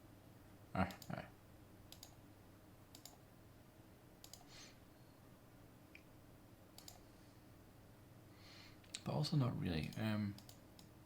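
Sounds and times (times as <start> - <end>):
computer mouse clicks: 1.9 - 2.2, 2.9 - 3.2, 4.2 - 4.5, 6.8 - 7.0, 9.8 - 11.0.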